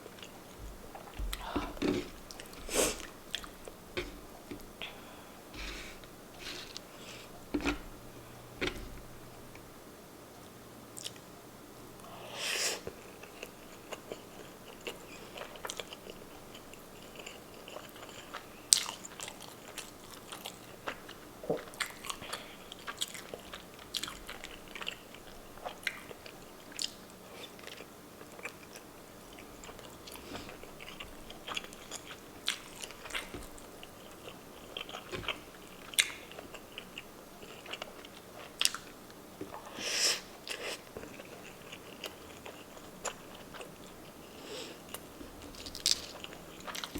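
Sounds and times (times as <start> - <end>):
person chewing food: 0.0 - 9.8, 12.8 - 46.9
food crunches: 44.9 - 46.9.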